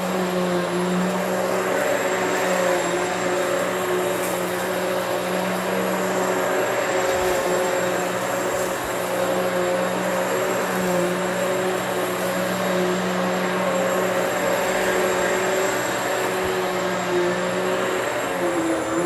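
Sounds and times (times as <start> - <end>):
vacuum cleaner running on carpet: 0.0 - 19.0.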